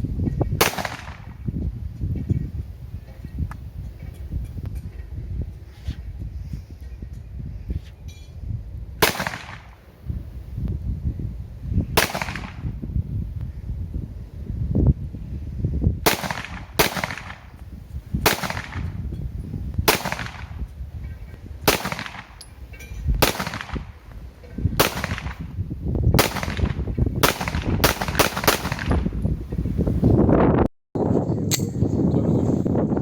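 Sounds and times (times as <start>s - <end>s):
pistol gunshots: 0.6s - 1.3s, 9.0s - 9.8s, 12.0s - 12.7s, 16.1s - 17.6s, 18.2s - 19.0s, 19.9s - 20.6s, 21.6s - 22.4s, 23.2s - 23.9s, 24.8s - 25.4s, 26.2s - 29.0s.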